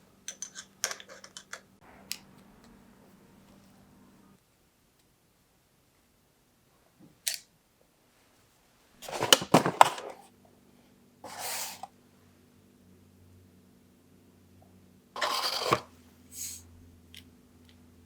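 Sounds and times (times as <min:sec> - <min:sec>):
short scrape: 0:11.3 - 0:11.9, 0:15.2 - 0:16.6.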